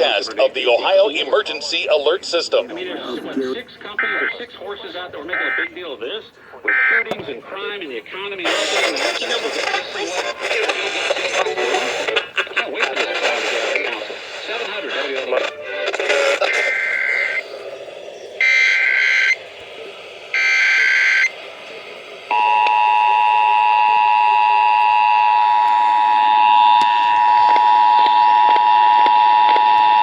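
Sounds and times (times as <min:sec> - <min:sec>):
digital header tone bursts: 0:18.4 - 0:19.4, 0:20.3 - 0:21.3.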